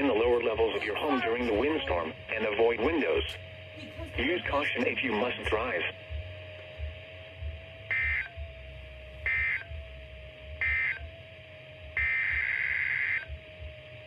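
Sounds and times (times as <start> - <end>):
faint steady tone: 0.0 - 14.0
warbling data chirps: 7.9 - 8.4, 12.0 - 13.3.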